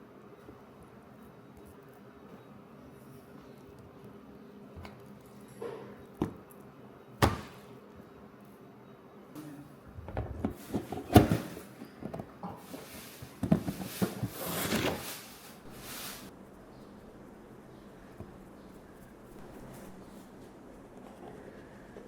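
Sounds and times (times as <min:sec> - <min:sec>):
rustling and scraping: 0:09.9 - 0:16.3.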